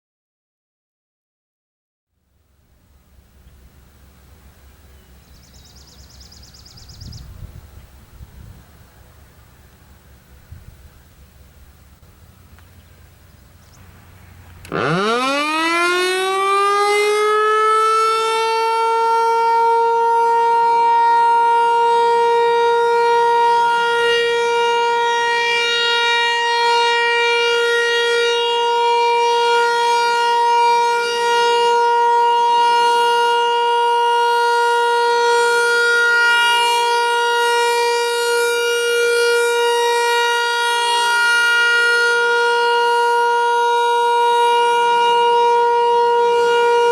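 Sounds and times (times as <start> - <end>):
warning siren wailing: 14.3 - 46.9.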